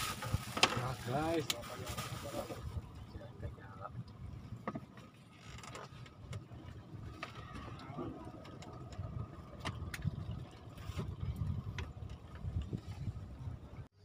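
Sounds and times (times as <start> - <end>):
constant low rumble: 0.0 - 14.0.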